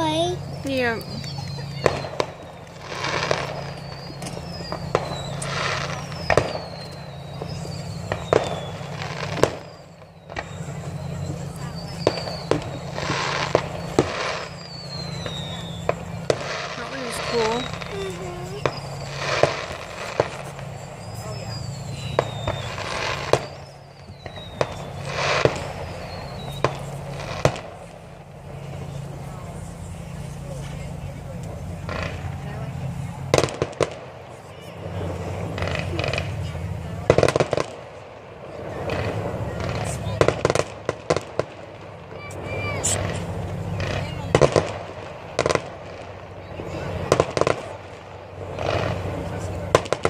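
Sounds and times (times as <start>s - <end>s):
firework bangs: 0.0s - 50.0s
firework crackling: 0.0s - 50.0s
falling firework whistles: 0.2s - 28.0s, 38.8s - 45.8s.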